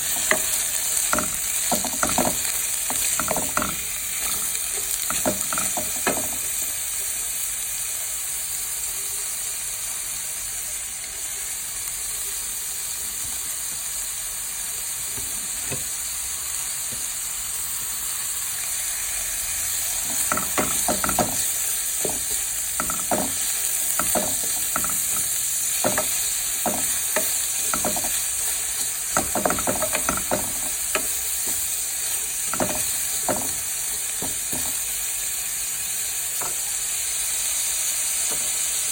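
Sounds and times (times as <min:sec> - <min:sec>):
spatula scraping a pan: 0:00.0 - 0:06.5, 0:20.0 - 0:34.8
vegetables sizzling in a pan: 0:00.0 - 0:38.9.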